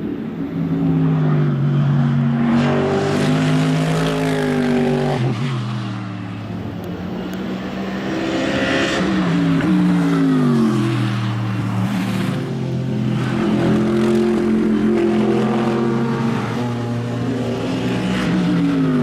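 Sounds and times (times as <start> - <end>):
race car engine at full speed: 0.0 - 19.0.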